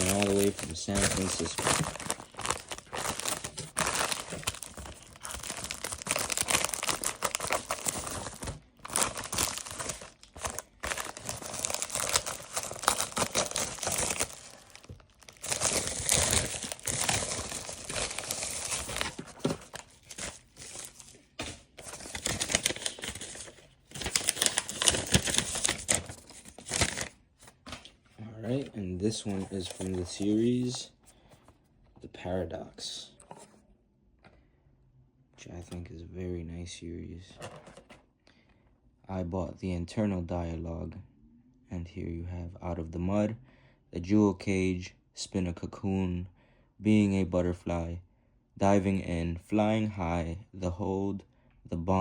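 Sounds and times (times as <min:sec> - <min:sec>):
packaging tearing: 0:00.0 - 0:21.2, 0:21.8 - 0:27.1, 0:29.1 - 0:30.6
packaging crinkling: 0:00.0 - 0:27.2, 0:28.5 - 0:30.8.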